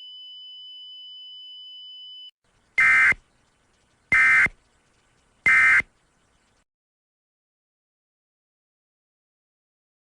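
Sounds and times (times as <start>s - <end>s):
emergency alert data tones: 0.0s - 4.8s, 5.4s - 6.4s.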